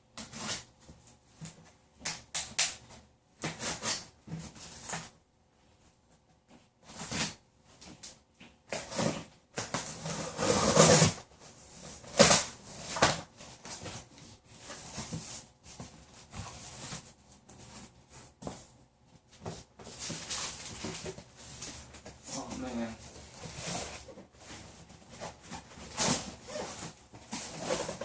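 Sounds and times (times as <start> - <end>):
cardboard rustling and scraping: 8.7 - 28.0.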